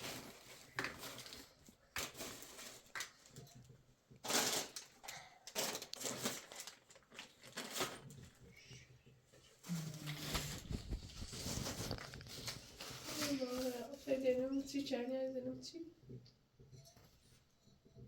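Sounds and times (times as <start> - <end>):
objects clicking and rustling: 0.0 - 8.9, 9.6 - 15.0.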